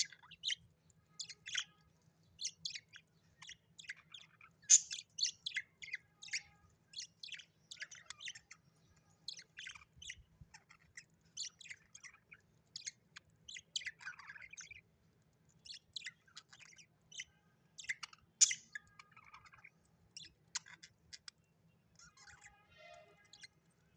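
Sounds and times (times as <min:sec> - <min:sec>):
budgerigars chirping: 0:00.0 - 0:00.6, 0:01.2 - 0:01.7, 0:02.4 - 0:08.6, 0:09.3 - 0:14.9, 0:15.6 - 0:21.4.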